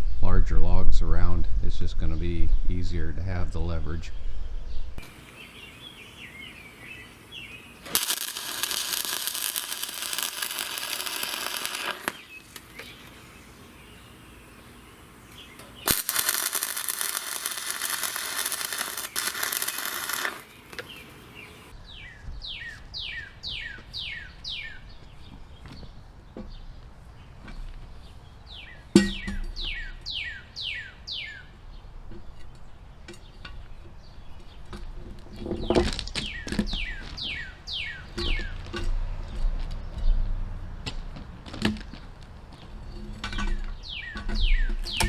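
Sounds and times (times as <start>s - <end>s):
bird chirping: 4.1s - 7.9s, 10.8s - 40.2s, 42.6s - 45.0s
arc welding crackle: 7.3s - 13.7s, 15.2s - 21.7s, 44.6s - 45.0s.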